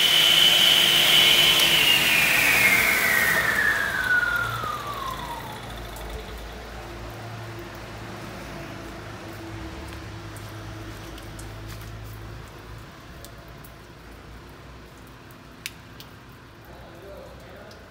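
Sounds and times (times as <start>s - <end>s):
low motor hum: 0.0s - 8.1s.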